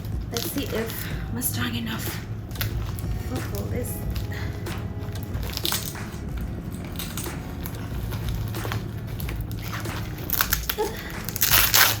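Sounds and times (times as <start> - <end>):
package packaging crinkling: 2.4 - 12.0.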